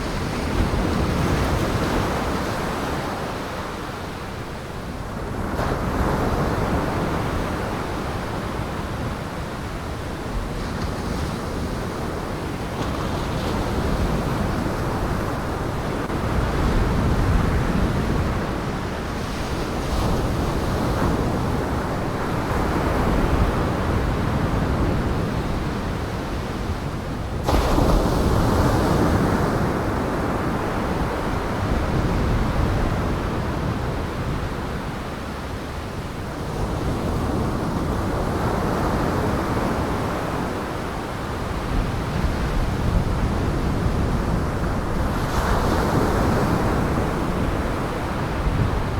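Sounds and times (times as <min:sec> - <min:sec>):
wind buffeting microphone: 0:41.4 - 0:48.9.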